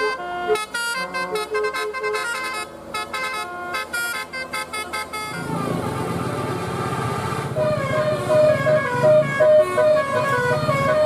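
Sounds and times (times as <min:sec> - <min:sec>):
musical bus horn: 0:00.0 - 0:11.0.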